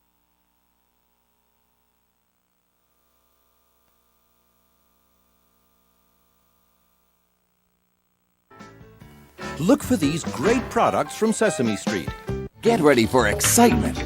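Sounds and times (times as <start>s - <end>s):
faint electrical hum with hiss: 0.0s - 9.8s.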